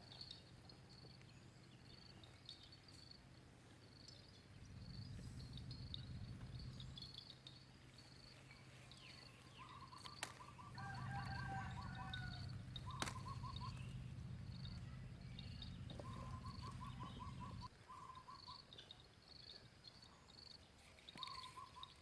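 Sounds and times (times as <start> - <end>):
low steady hum: 4.4 - 8.6, 10.2 - 17.7
insects chirping: 4.6 - 8.4, 9.6 - 17.7
bird trilling: 9.6 - 18.5
sharp clicks: 12.5 - 13.8.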